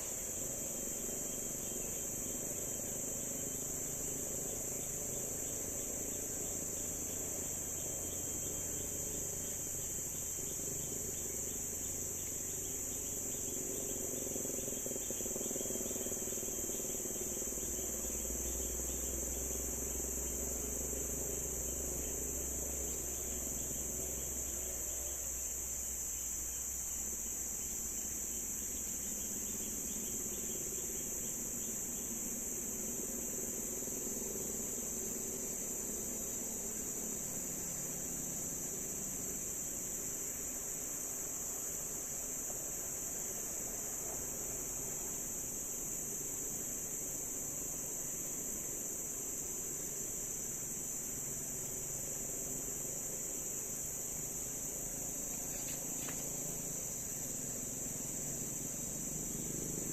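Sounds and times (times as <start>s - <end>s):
forest insects droning: 0.0s - 59.9s.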